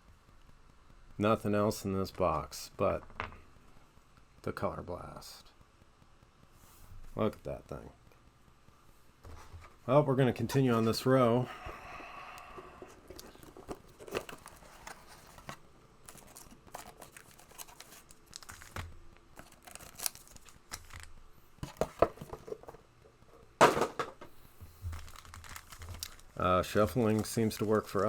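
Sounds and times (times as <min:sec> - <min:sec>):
cards snapping and shuffling: 0:12.8 - 0:22.3, 0:24.9 - 0:28.0
wrapper crinkling and tearing: 0:13.0 - 0:21.2, 0:24.8 - 0:28.0.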